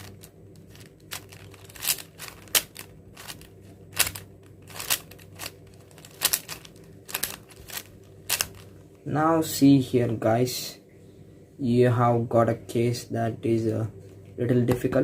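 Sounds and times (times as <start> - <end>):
puzzle cube clicking: 0.0 - 8.6.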